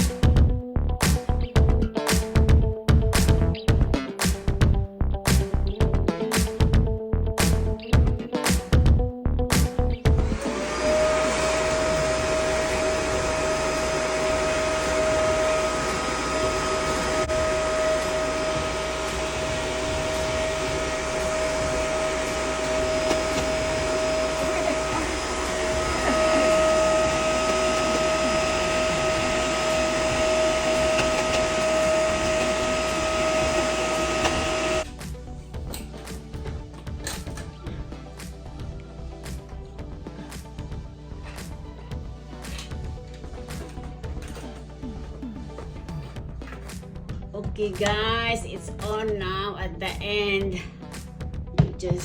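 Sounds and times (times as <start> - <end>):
electric blower motor whine: 10.0 - 35.3.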